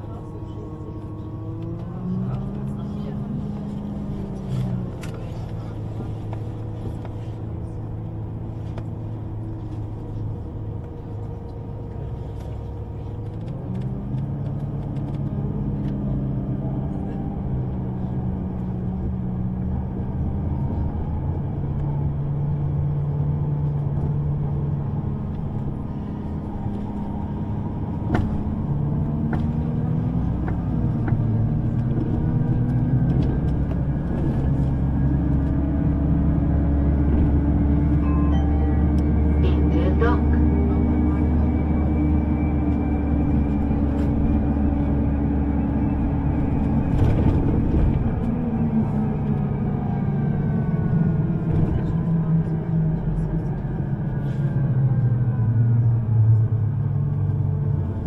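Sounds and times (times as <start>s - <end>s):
underground train rumbling: 0.0s - 58.0s.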